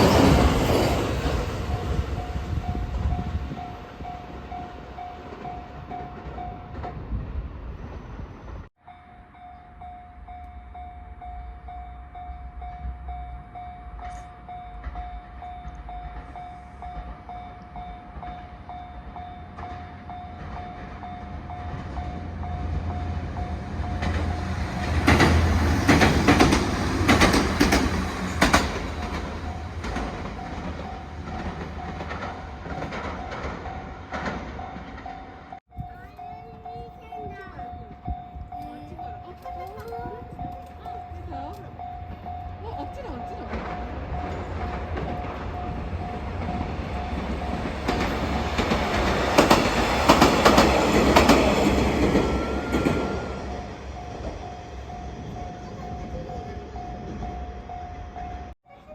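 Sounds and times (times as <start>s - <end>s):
level crossing warning bell: 0.0s - 6.9s, 8.8s - 25.0s, 28.4s - 58.6s
diesel train rumble: 0.0s - 58.6s
wheel clacks over rail joints: 23.6s - 35.6s, 39.2s - 53.2s.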